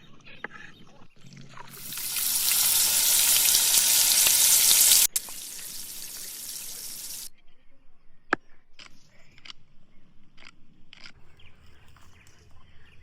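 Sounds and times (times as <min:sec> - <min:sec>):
chicken sizzling in hot oil: 0:01.7 - 0:07.3.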